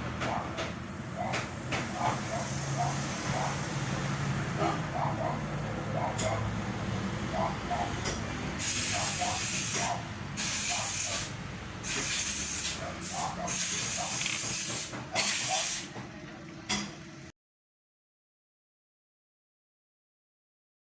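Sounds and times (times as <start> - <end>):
loud hissing bursts: 8.6 - 15.9.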